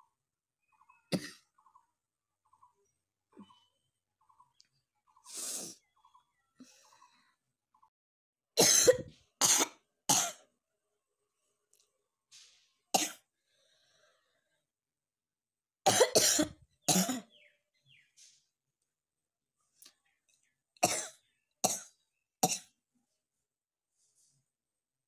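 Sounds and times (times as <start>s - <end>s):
person coughing: 1.1s - 1.4s, 8.6s - 10.4s, 15.9s - 17.3s.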